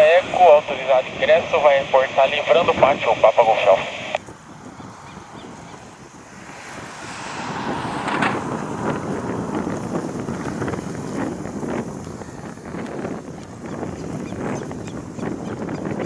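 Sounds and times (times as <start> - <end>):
wind buffeting microphone: 0.0 - 16.0
low rumble: 4.2 - 12.7.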